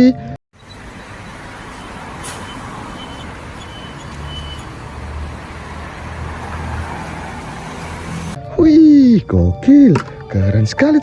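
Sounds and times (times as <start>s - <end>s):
water spraying: 0.6s - 8.4s.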